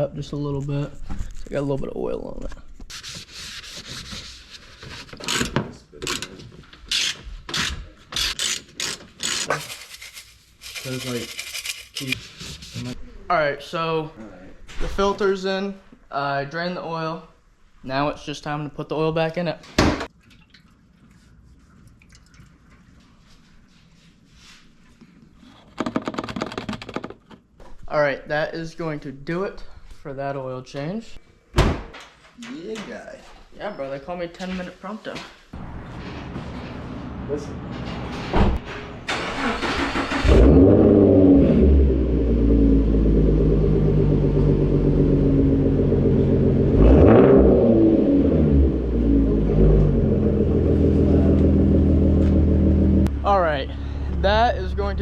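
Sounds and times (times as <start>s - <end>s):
car engine starting and idling: 39.0s - 55.0s.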